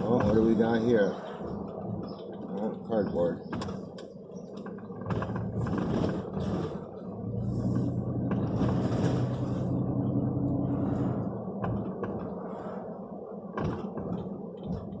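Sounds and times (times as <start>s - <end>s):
road rumble: 0.0s - 15.0s
vehicle engine humming: 0.0s - 15.0s
sharp knocks and clicks: 1.7s - 6.6s, 11.6s - 12.4s, 13.6s - 15.0s.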